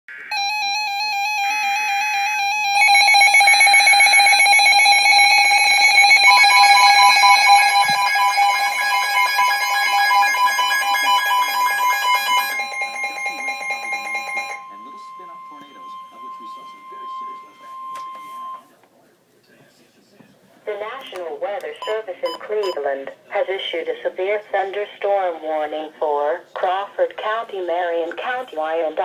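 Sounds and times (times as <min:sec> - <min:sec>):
pulsing electronic alert tone: 0:00.3 - 0:18.6
steady tone: 0:01.6 - 0:18.6
digital header bursts: 0:02.0 - 0:17.9.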